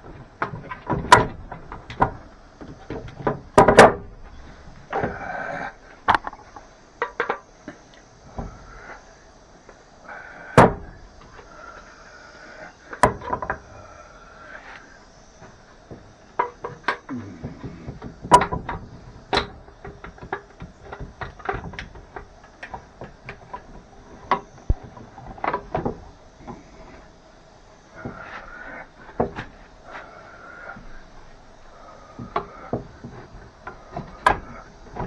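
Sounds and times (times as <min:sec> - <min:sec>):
wooden boards and clamps knocking: 0:00.0 - 0:04.2, 0:10.6 - 0:10.9, 0:12.9 - 0:13.8, 0:15.4 - 0:26.6, 0:29.1 - 0:29.6, 0:32.1 - 0:35.0.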